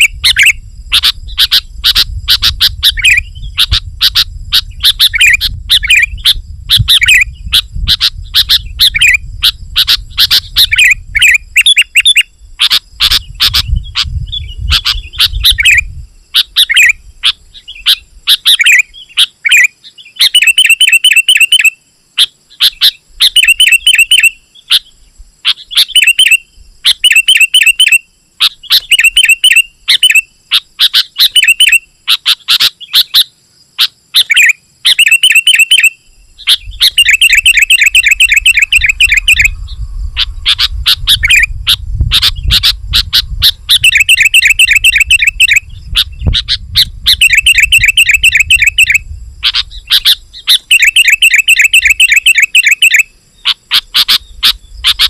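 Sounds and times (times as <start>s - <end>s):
bird chirping rapidly: 0.0s - 55.0s
low rumble: 39.4s - 43.8s.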